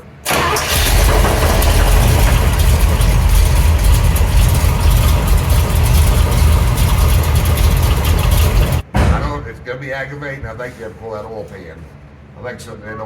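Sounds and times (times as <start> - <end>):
fast engine ticking: 0.3 - 8.8
car engine idling: 0.3 - 8.9.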